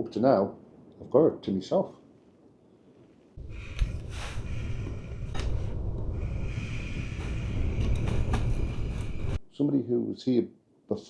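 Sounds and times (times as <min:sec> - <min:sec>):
sharp knocks and rattles: 0:03.4 - 0:09.4
wind gusting against microphone: 0:03.4 - 0:09.4.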